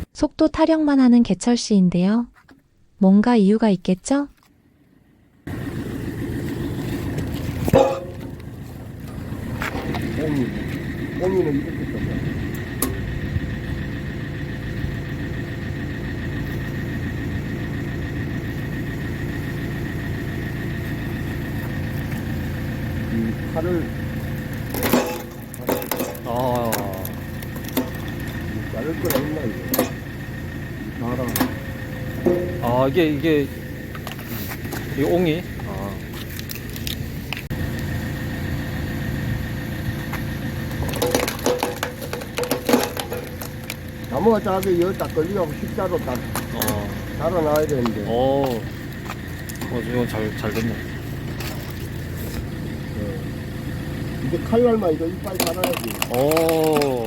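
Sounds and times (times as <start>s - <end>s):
tractor engine running: 4.0s - 57.0s
hydraulic whine: 4.5s - 57.0s
thin high tone: 24.9s - 36.1s.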